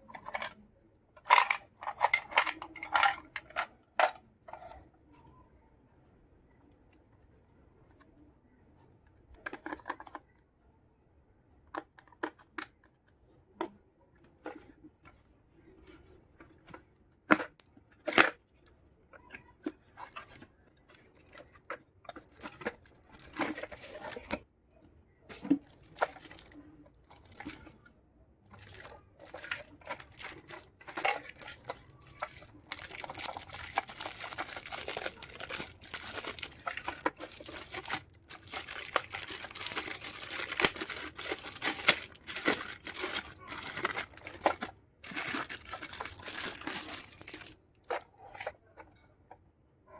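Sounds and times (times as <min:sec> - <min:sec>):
plastic packaging crinkling: 0:22.1 - 0:24.4, 0:25.5 - 0:27.9, 0:28.5 - 0:48.4
plastic pieces clicking: 0:28.6 - 0:48.0.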